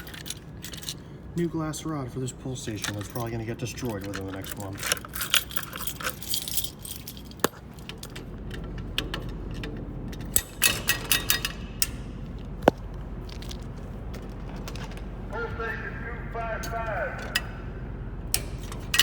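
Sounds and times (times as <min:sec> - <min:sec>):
small clicks and clinks: 0:02.8 - 0:12.8.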